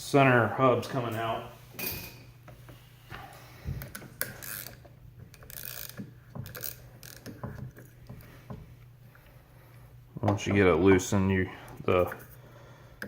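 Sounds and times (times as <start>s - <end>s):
socket ratchet clicking: 4.2s - 7.5s.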